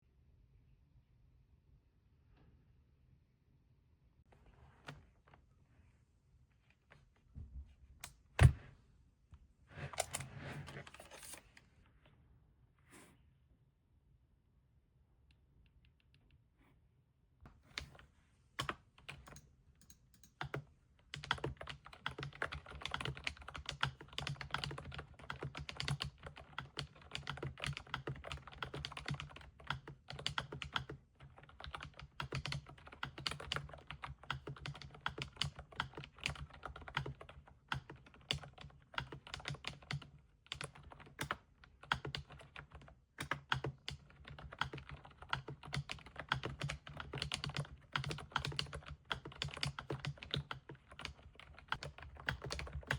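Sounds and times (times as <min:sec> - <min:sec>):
typing on mechanical keyboard: 0:10.0 - 0:10.3, 0:18.6 - 0:52.9.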